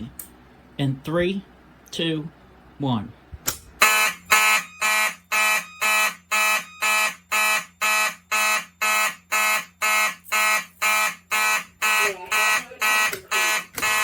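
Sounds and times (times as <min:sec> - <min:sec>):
fire alarm horns pulsing: 0:03.8 - 0:14.0.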